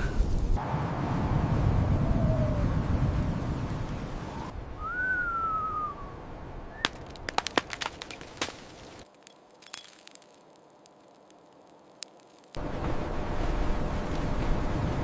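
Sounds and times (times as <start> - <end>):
rushing wind: 0.0 - 6.9
high whistle: 4.8 - 6.1
sharp cracks and snaps: 6.8 - 12.6.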